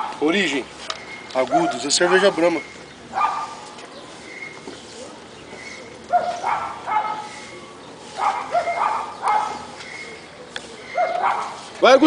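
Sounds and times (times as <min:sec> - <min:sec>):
dog barking: 0:00.0 - 0:00.3, 0:01.4 - 0:02.5, 0:03.1 - 0:03.6, 0:06.1 - 0:07.5, 0:08.2 - 0:09.8, 0:10.9 - 0:11.7.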